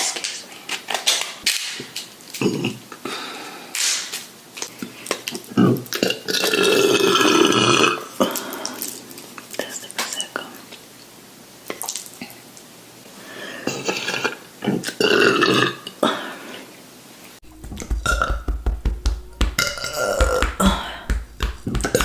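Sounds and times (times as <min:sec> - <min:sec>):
quick clicks and taps: 0:17.4 - 0:22.0.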